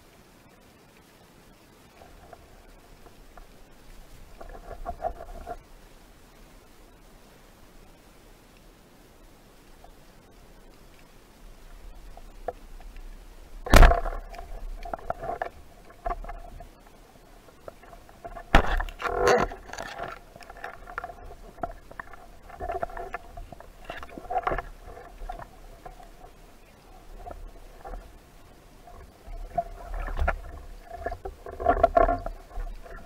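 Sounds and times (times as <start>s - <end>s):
water splashing and knocking: 13.6s - 16.6s, 17.6s - 25.5s.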